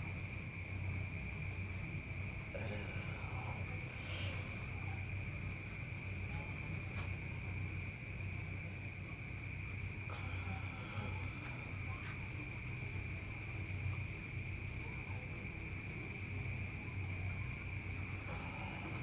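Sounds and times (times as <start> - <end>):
high-pitched insect drone: 0.0 - 19.0
low steady hum: 0.0 - 19.0.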